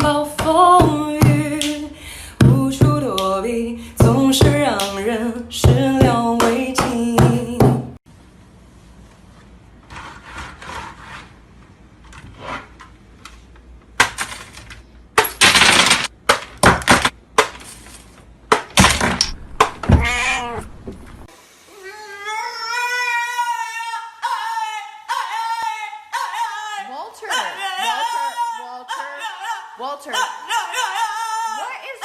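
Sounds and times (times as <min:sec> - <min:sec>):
knocks and crashes: 0:14.0 - 0:21.3
short animal cry: 0:19.8 - 0:20.8
dog whining: 0:19.9 - 0:20.8.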